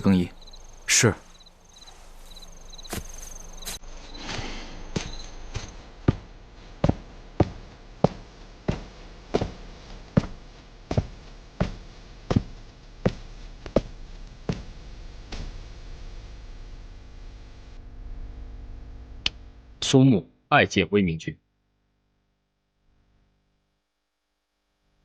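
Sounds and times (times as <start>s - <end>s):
hard-soled footsteps on hard floor: 1.3s - 14.7s.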